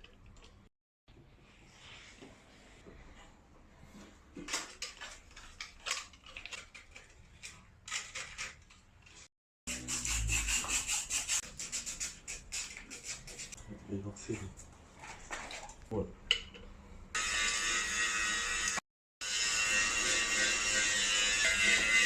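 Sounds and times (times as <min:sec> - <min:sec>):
hand tool scraping a pipe: 0:04.8 - 0:13.6, 0:19.5 - 0:22.0.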